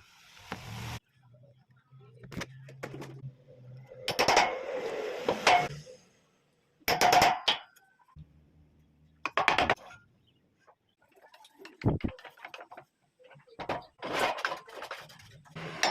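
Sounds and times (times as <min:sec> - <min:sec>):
knocks and clatter of handling: 0:11.6 - 0:15.9.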